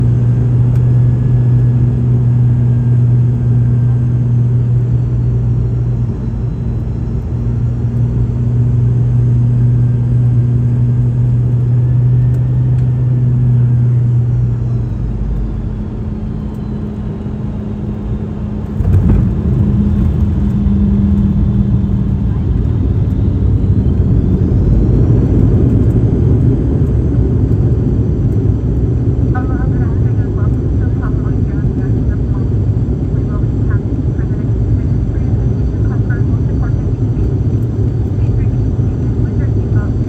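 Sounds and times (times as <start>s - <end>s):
jet engines droning with whine: 0.0s - 40.0s
rollout rumble: 17.8s - 26.9s.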